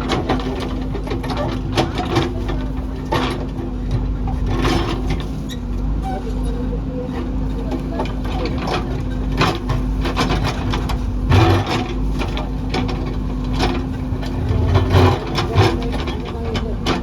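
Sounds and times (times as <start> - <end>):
diesel engine running: 0.0 - 17.0
knocks and scrapes of earth and rock: 8.8 - 17.0.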